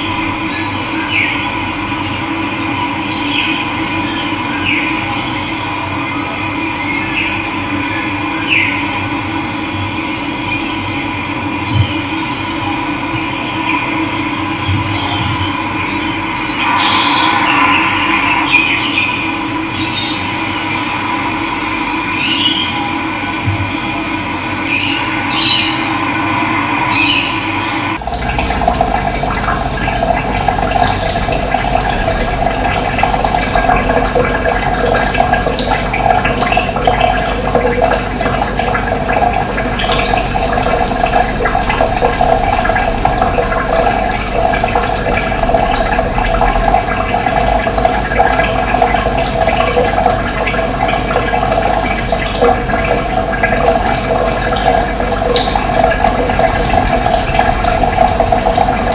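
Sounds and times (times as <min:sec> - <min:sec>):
low steady hum: 0:00.0 - 0:58.9
running water rushing: 0:16.3 - 0:21.1, 0:24.7 - 0:58.9.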